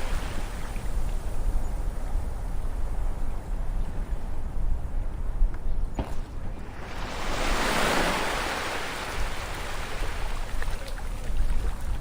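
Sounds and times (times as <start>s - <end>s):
low rumble of surf: 0.0s - 12.0s
wave breaking on shore: 6.4s - 11.6s.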